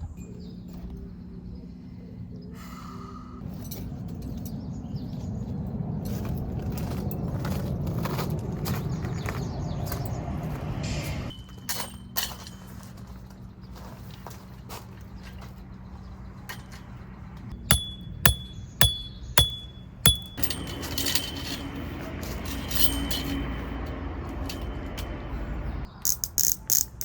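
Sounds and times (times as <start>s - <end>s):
sharp ringing clinks: 17.7s - 21.6s.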